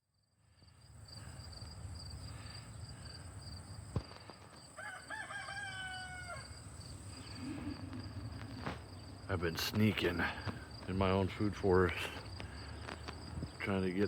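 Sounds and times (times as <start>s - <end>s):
rooster crowing: 4.7s - 7.9s.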